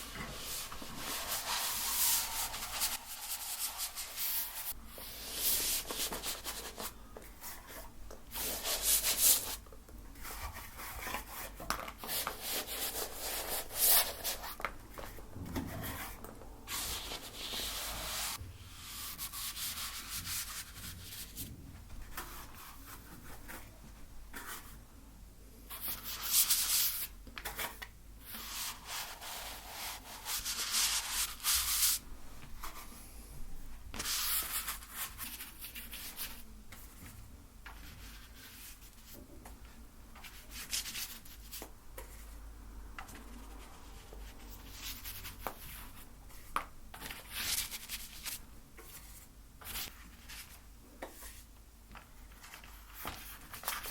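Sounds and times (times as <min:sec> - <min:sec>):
paint scraping on canvas: 0:00.0 - 0:06.9, 0:15.7 - 0:21.1.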